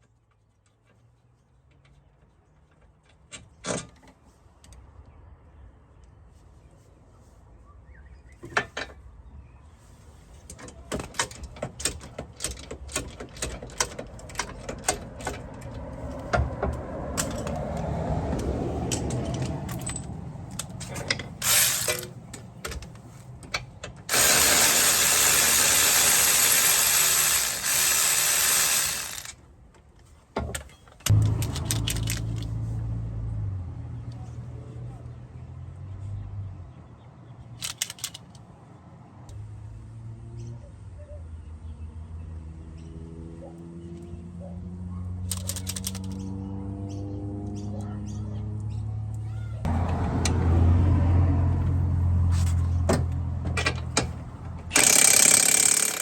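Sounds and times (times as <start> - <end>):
hand tools clicking and ratcheting: 10.5 - 29.4, 30.5 - 32.5, 37.6 - 38.4, 45.3 - 46.2, 52.3 - 56.0.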